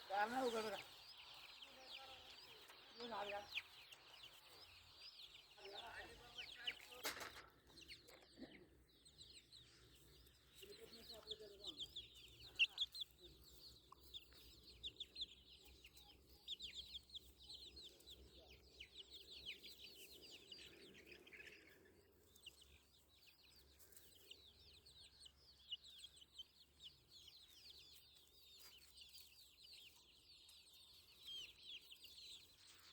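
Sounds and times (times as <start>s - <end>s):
chickens peeping: 0.0s - 32.9s.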